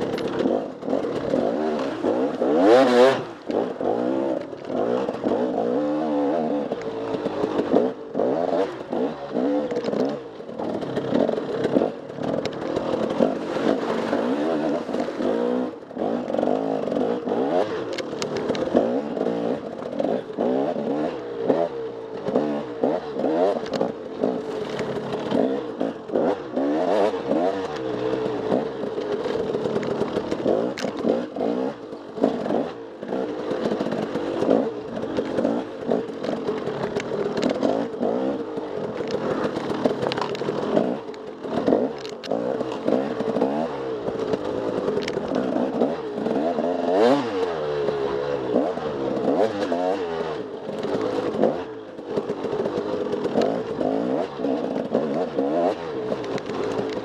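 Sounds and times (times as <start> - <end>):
dirt bike engine revving: 0.0 - 57.0.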